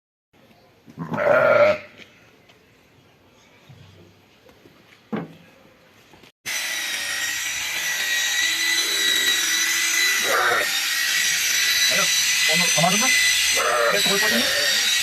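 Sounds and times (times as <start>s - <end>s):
electric clipper whining: 6.5s - 15.0s.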